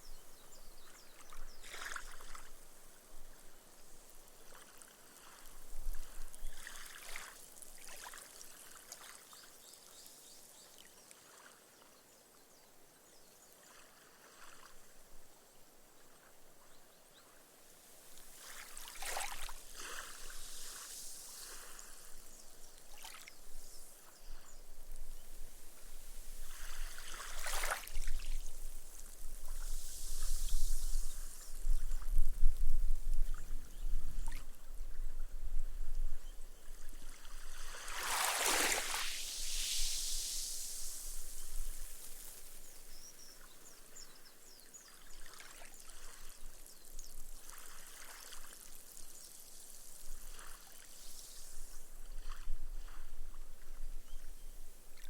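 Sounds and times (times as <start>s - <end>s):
small waves washing on sand: 3.4s - 10.2s, 17.7s - 32.1s, 36.7s - 44.0s, 45.0s - 53.2s
foam fizzing: 37.9s - 42.8s.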